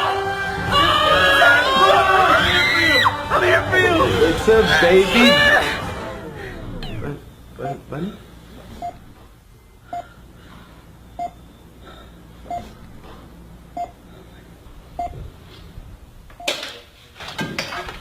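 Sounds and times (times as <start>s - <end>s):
low hum: 3.0s - 16.4s
short electronic beep: 6.6s - 7.8s.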